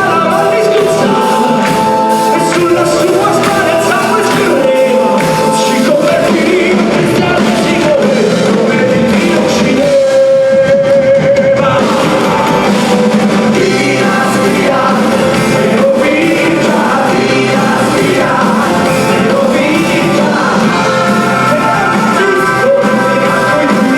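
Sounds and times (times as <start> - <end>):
live band music with singing: 0.0 - 23.9.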